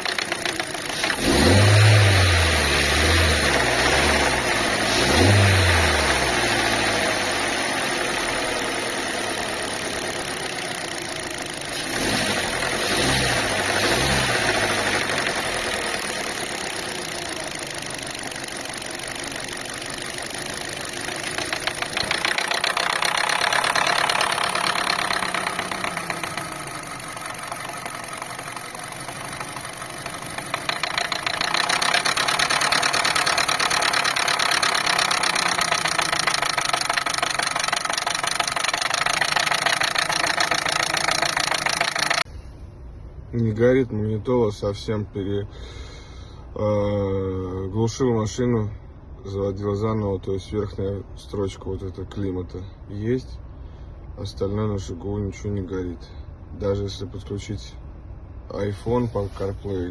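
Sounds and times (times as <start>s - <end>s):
car engine revving: 0.0s - 42.3s
rhythmic engine knocking: 0.0s - 42.3s.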